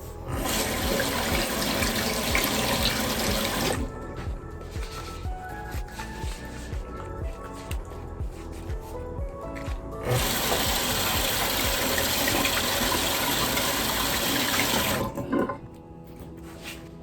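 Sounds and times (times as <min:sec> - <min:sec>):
background music: 0:00.0 - 0:17.0
water running: 0:00.3 - 0:03.9, 0:10.0 - 0:15.6.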